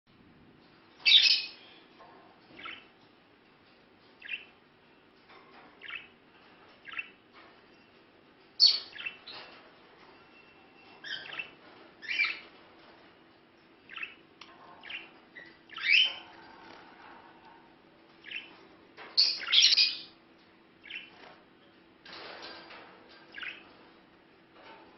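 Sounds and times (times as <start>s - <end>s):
budgerigars chirping: 1.0s - 1.9s, 2.5s - 2.9s, 4.2s - 4.6s, 5.8s - 6.1s, 6.8s - 7.2s, 8.6s - 9.6s, 11.0s - 12.5s, 13.9s - 16.7s, 18.2s - 20.2s, 20.8s - 21.3s, 23.3s - 23.8s.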